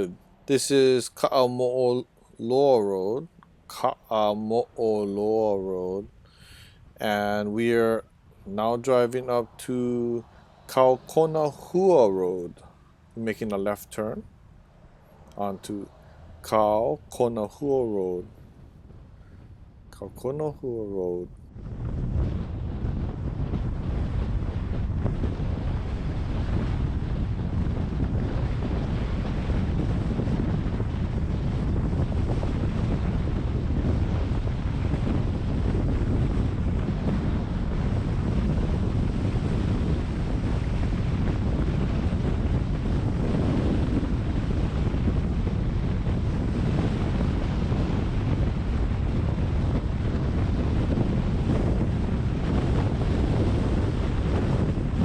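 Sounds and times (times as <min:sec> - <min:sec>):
wind buffeting microphone: 0:00.0 - 0:55.0
car driving road noise: 0:08.0 - 0:20.1.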